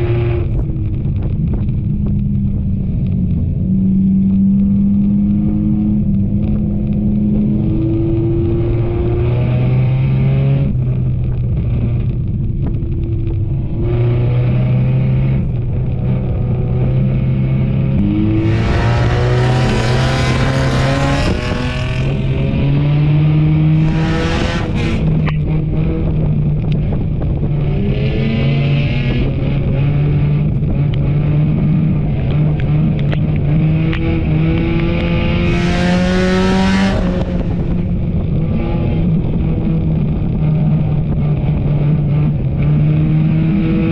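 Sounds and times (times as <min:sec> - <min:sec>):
race car engine revving: 0:13.7 - 0:43.9.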